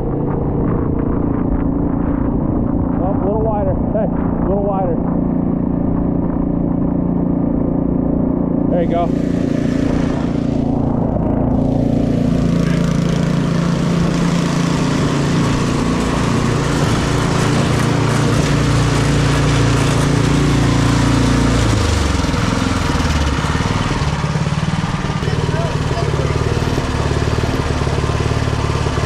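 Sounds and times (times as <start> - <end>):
snowblower engine running: 0.0 - 29.0
rushing noise: 8.7 - 25.3.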